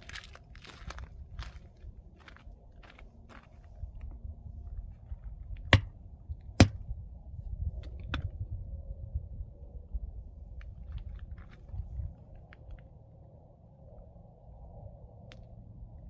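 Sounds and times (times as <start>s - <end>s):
low rumble: 0.0s - 16.0s
hammer striking rock: 6.6s - 6.8s.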